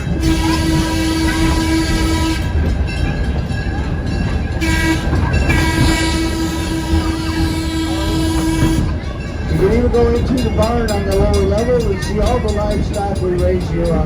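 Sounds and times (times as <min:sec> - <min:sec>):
locomotive horn blasts: 0:00.0 - 0:03.1, 0:04.5 - 0:11.4
rumble of moving train: 0:00.0 - 0:14.0.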